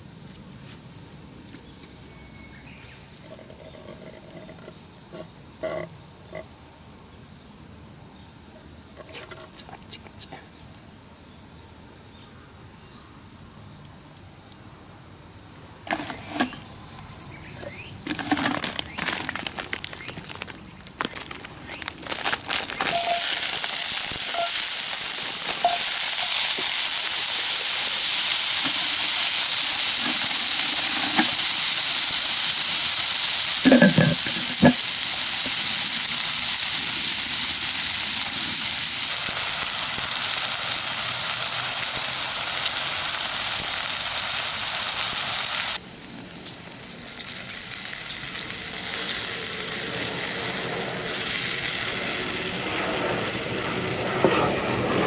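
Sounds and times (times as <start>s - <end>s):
food sizzling in a pan: 15.9s - 52.7s.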